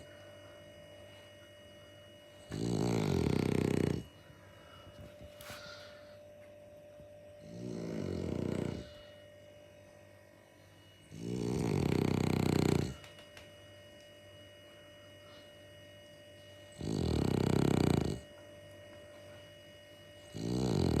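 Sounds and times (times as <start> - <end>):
dog snoring loudly: 2.4 - 4.2, 7.4 - 9.2, 11.1 - 13.0, 16.7 - 18.3, 20.2 - 21.0
dog breathing quietly: 2.5 - 6.4.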